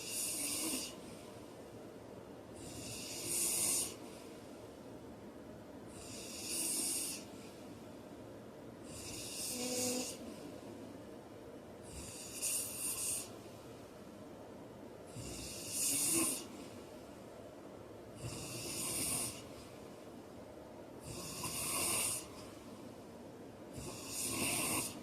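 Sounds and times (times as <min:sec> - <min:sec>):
man snoring: 0:00.0 - 0:01.0, 0:02.6 - 0:04.0, 0:06.0 - 0:07.3, 0:08.9 - 0:10.3, 0:11.9 - 0:13.3, 0:15.1 - 0:16.5, 0:18.2 - 0:19.5, 0:21.0 - 0:22.4, 0:23.7 - 0:25.0.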